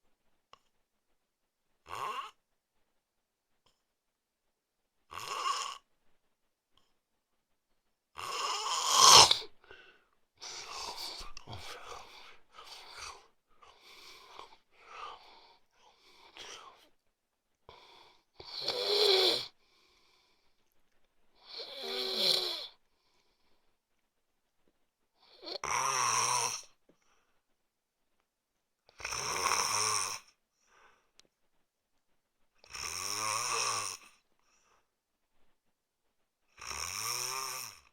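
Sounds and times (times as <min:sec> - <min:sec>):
man snoring: 0:01.9 - 0:02.4, 0:05.1 - 0:05.8, 0:08.2 - 0:09.5, 0:10.4 - 0:14.5, 0:17.7 - 0:19.6, 0:21.4 - 0:22.8, 0:25.2 - 0:26.7, 0:29.0 - 0:30.3, 0:32.6 - 0:34.2, 0:36.6 - 0:37.9
soft breath: 0:09.5 - 0:17.0, 0:30.5 - 0:31.6.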